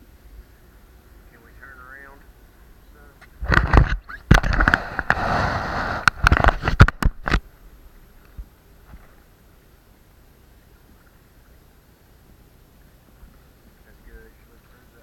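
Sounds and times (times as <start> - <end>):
crackling and knocks on microphone: 3.2 - 7.5.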